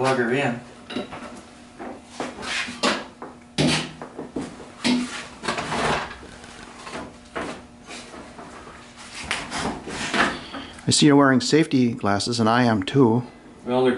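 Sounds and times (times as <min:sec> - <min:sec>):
knocks and scrapes of handling: 0:01.1 - 0:10.6.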